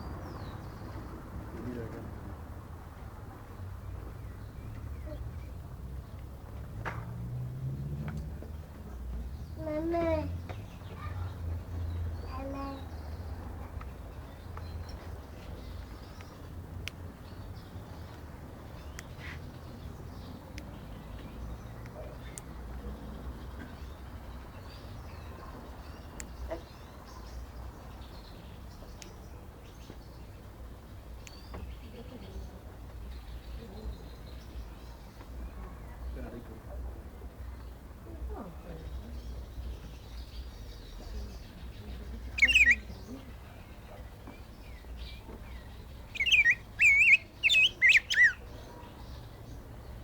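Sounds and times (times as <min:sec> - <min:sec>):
bird singing warbled phrases: 0:38.7 - 0:50.0
bird singing whistled notes: 0:42.3 - 0:43.0, 0:46.1 - 0:48.4.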